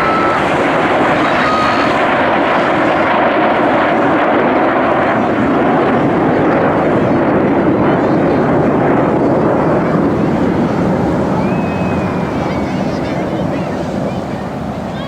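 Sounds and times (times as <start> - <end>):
plane flying over: 0.0 - 15.0.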